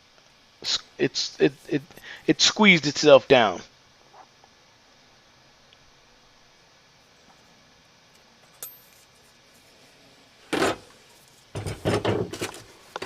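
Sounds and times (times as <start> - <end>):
metal tools clinking: 8.5 - 9.1.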